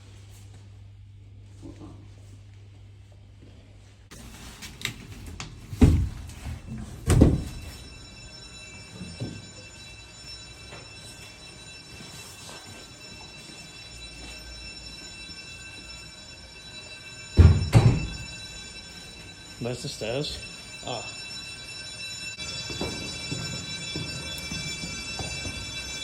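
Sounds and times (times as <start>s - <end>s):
steady high drone: 7.5s - 26.0s
eerie background music: 20.4s - 26.0s.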